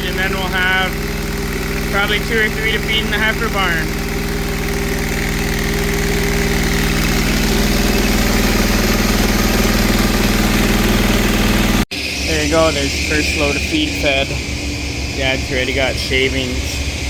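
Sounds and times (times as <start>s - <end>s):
engine running steadily: 0.0s - 17.0s
feed mixer droning: 0.0s - 17.0s.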